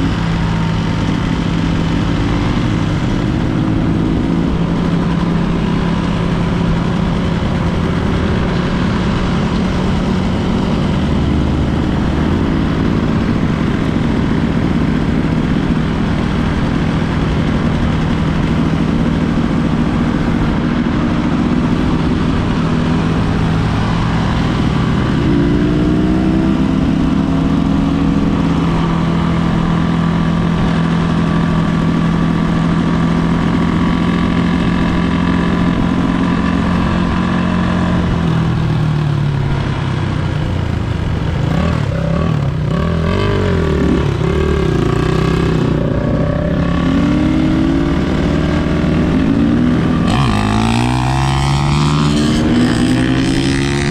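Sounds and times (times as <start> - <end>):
dirt bike engine revving: 39.3 - 53.9.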